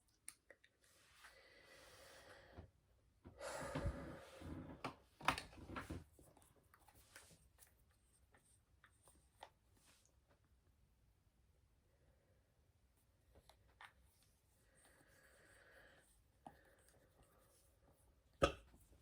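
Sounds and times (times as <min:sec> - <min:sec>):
soft breathing: 0:00.8 - 0:04.8, 0:14.2 - 0:18.1.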